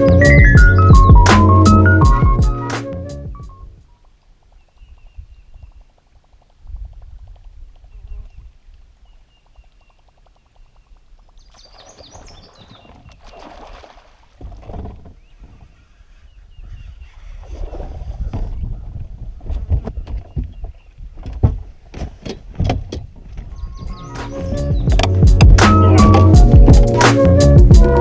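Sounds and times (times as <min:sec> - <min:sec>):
faint bird chirps: 0:07.9 - 0:13.6
water sloshing: 0:11.1 - 0:15.7
low wind rumble: 0:15.2 - 0:21.8, 0:23.1 - 0:28.0.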